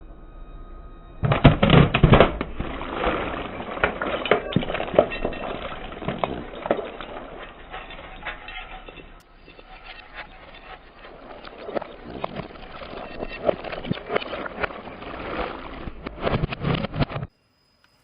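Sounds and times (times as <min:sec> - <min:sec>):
brittle objects crunching and snapping: 0:01.2 - 0:08.9.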